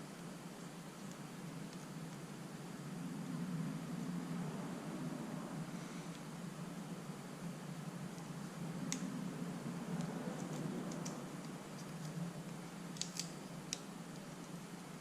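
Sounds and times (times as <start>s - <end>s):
low steady hum: 0.0s - 15.0s
small parts clicking: 10.4s - 12.2s, 12.9s - 14.6s.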